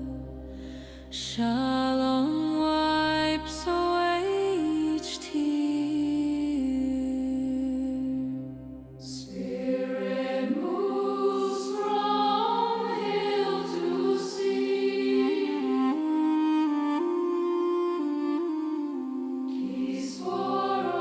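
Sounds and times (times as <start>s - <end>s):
low drone and chord: 0.0s - 21.0s
sustained chords: 5.4s - 21.0s
wordless choir-like singing: 9.0s - 18.4s, 19.4s - 21.0s.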